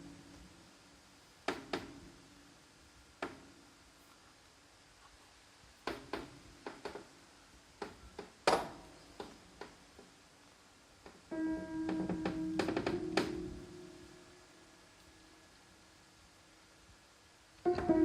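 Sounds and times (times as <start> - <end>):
piano note ringing: 11.3 - 15.3, 17.6 - 18.0.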